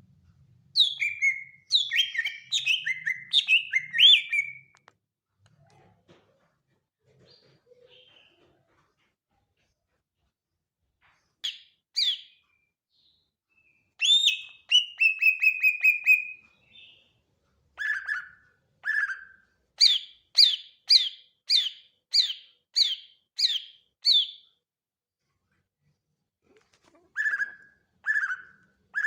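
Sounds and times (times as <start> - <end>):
bird singing whistled notes and trills: 0.8 - 4.7, 11.4 - 17.1, 17.8 - 24.4, 27.2 - 29.0.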